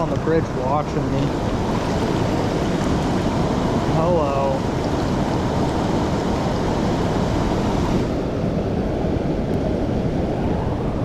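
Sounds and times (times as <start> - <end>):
water rushing through spillway: 0.0 - 8.2.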